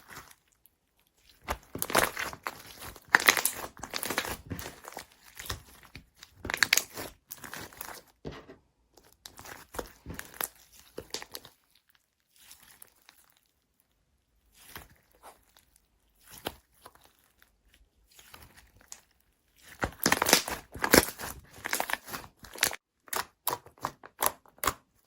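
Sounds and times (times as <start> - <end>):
slime squeezed by hand crackling: 1.3 - 7.8.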